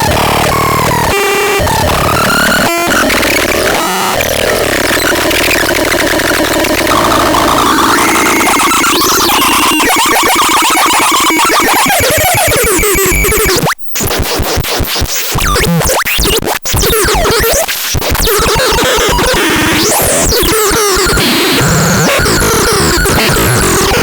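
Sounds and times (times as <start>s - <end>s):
noisy synthesizer glides and pulses: 18.4s - 24.0s.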